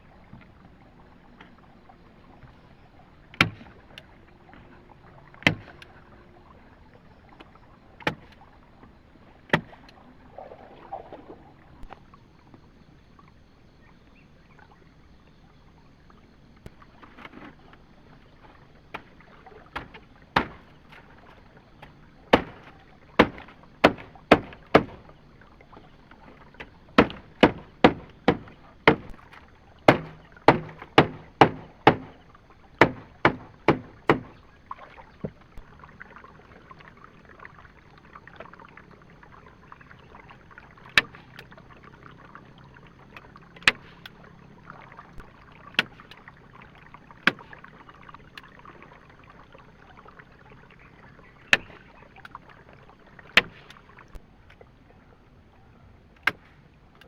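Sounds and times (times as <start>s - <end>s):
tool striking wood: 23.2s - 25.0s, 27.0s - 29.2s, 29.9s - 32.2s, 32.8s - 34.4s.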